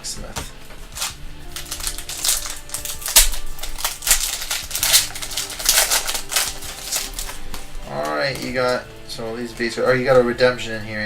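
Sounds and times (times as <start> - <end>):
trading cards flipping and sliding: 0.4 - 8.8.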